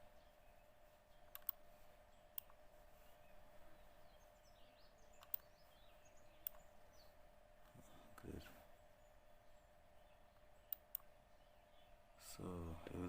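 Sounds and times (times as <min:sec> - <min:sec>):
faint bird chirps: 0:00.0 - 0:13.0
faint steady hum: 0:00.0 - 0:13.0
computer mouse clicks: 0:01.3 - 0:01.6, 0:02.3 - 0:02.6, 0:05.2 - 0:05.5, 0:06.4 - 0:06.6, 0:10.6 - 0:11.1.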